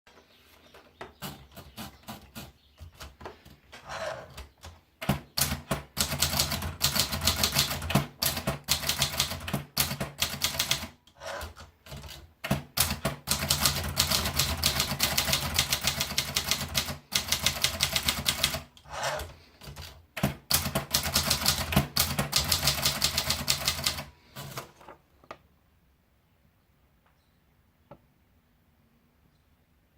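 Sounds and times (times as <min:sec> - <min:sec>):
typewriter typing: 0:01.2 - 0:24.8.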